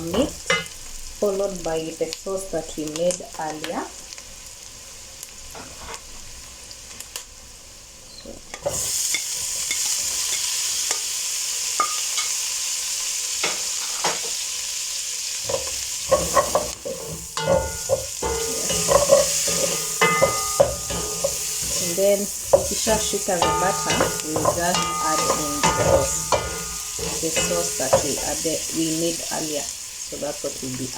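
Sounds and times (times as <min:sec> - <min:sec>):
meat sizzling in a pan: 0:00.0 - 0:30.9
spoon knocking against pan: 0:15.5 - 0:28.6
spoon stirring and scraping: 0:15.5 - 0:28.7.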